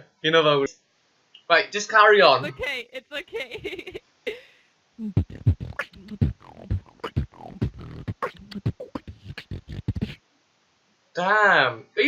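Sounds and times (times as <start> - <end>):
beatboxing: 2.4 - 3.9, 5.0 - 10.2.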